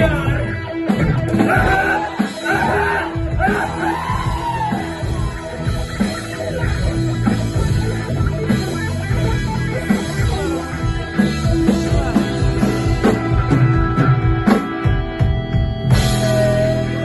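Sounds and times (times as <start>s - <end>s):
bass guitar: 0.0s - 17.0s
drum kit: 0.0s - 17.0s
electric guitar solo: 0.0s - 17.0s.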